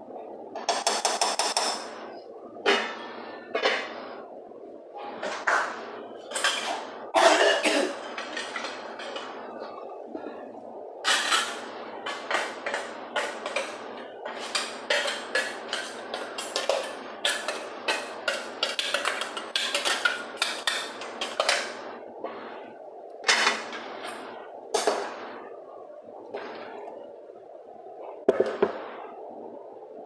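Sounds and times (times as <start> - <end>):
dishes and utensils clattering: 2.6 - 4.0, 5.2 - 10.2, 11.0 - 21.8, 23.2 - 25.2.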